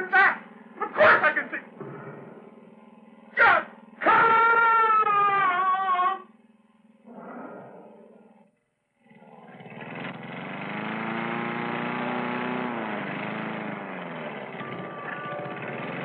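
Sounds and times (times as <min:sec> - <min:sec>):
lawn mower engine running: 0:09.1 - 0:16.0.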